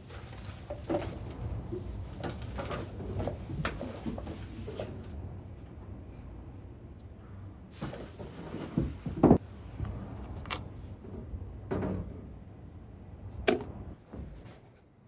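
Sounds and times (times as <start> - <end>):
low steady rumble: 0.0 - 7.8, 9.2 - 14.1.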